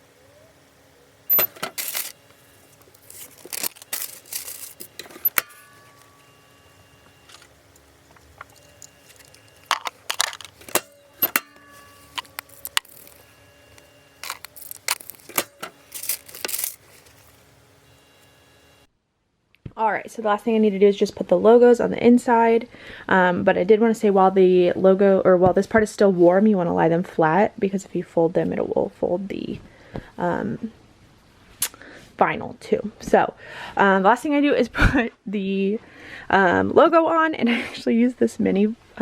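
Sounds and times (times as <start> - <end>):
clatter of objects handled: 1.3 - 2.2, 2.8 - 5.6, 8.1 - 17.4.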